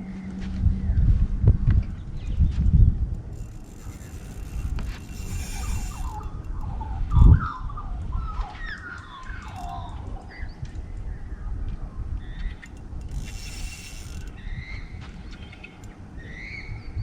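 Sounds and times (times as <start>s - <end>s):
steady low rumble: 0.0s - 8.2s
birds chirping: 12.2s - 17.0s.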